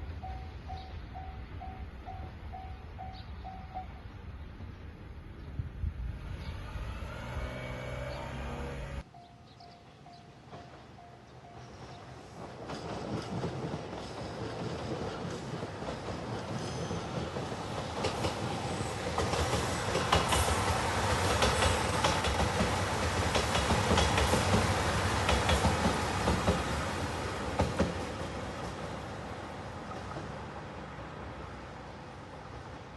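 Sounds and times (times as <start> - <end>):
diesel train approaching: 0.0 - 32.9
wheels clattering on rails: 10.5 - 29.0.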